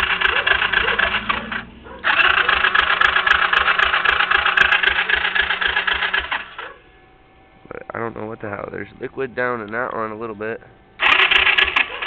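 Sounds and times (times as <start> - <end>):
engine cranked by starter: 0.0 - 6.7, 11.0 - 12.0.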